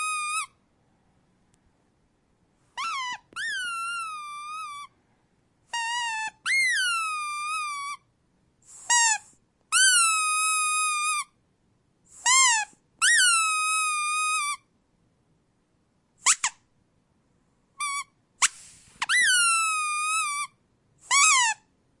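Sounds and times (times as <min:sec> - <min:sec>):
rubber squeak toy squeaking: 0:00.0 - 0:00.6, 0:02.7 - 0:04.9, 0:05.7 - 0:08.1, 0:08.7 - 0:11.4, 0:12.1 - 0:14.7, 0:16.2 - 0:16.7, 0:17.8 - 0:21.7.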